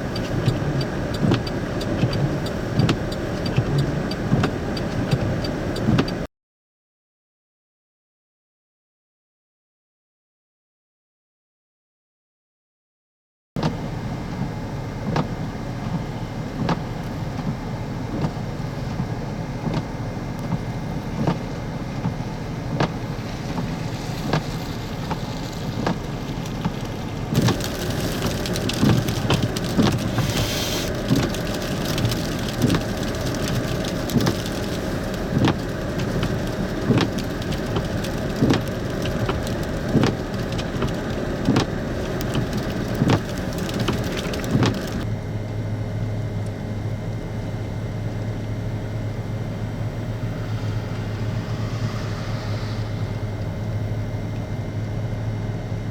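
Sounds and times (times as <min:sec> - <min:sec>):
road and engine rumble: 0:00.0 - 0:06.3, 0:13.6 - 0:55.9
sleet ticking on car: 0:27.4 - 0:45.1
hiss: 0:30.0 - 0:30.9, 0:50.2 - 0:53.7.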